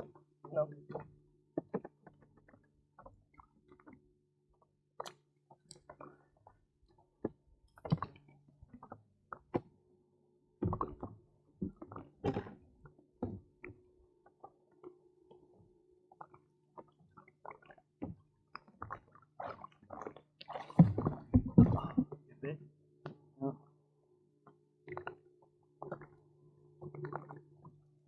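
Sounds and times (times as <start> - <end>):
knocks and clicks against kayak: 10.6 - 13.8, 20.8 - 22.2.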